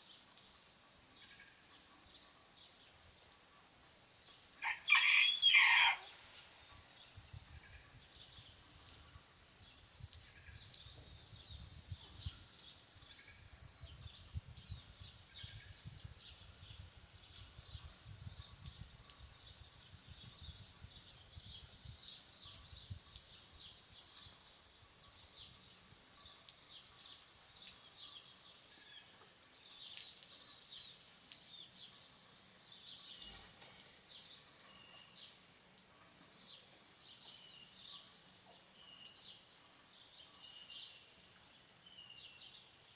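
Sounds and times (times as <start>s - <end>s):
small birds chirping: 36.2s - 42.9s.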